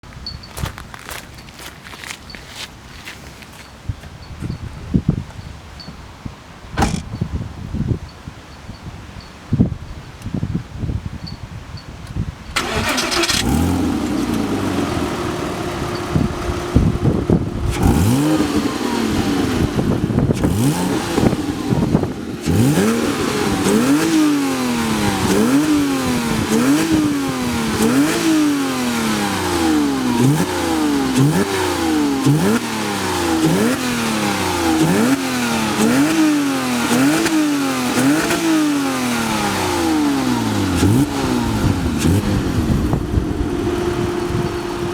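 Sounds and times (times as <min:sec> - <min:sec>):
car engine revving: 0:12.6 - 0:44.9.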